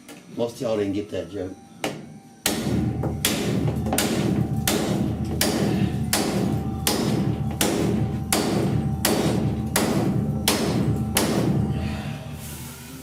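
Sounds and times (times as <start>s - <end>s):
hammer knocking on metal: 1.9s - 11.7s
steady low hum: 2.1s - 13.0s.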